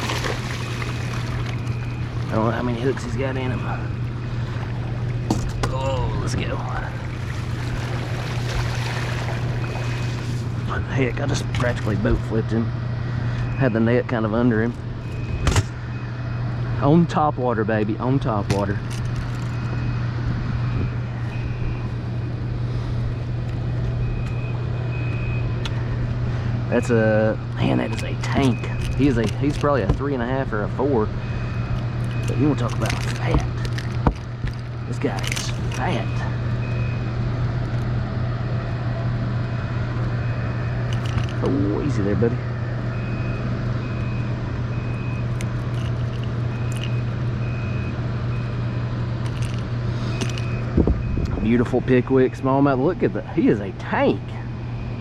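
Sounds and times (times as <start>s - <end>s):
low motor-like hum: 0.0s - 55.0s
electronic beep: 27.6s - 29.1s, 31.2s - 33.4s.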